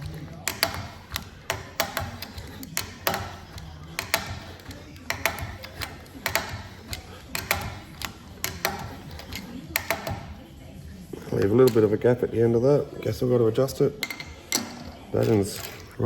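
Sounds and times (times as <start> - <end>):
metal tool clicks and taps: 0.0 - 10.4, 14.0 - 16.0.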